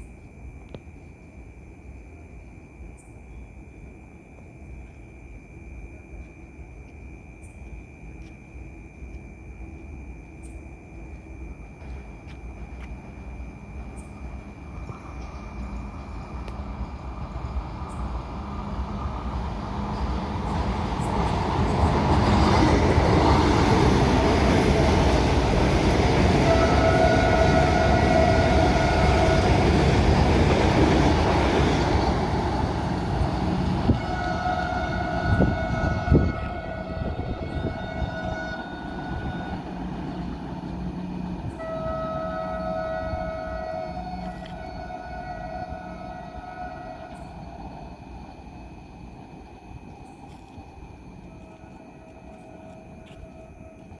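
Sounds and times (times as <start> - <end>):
train rumbling on rails: 0.0 - 53.9
train horn blasts: 22.0 - 47.7.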